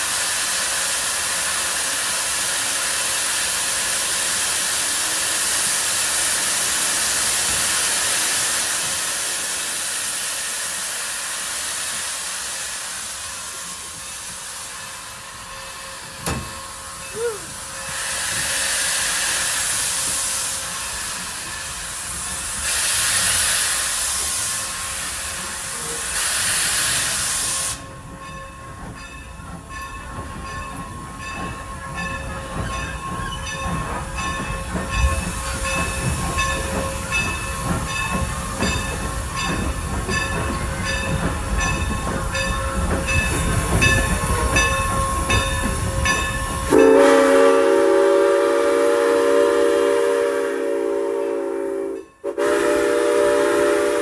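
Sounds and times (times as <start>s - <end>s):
loud hissing steam: 0.0s - 28.1s, 30.1s - 54.0s
steam locomotive rhythmic beat: 0.0s - 54.0s
steam whistle blowing: 46.7s - 54.0s.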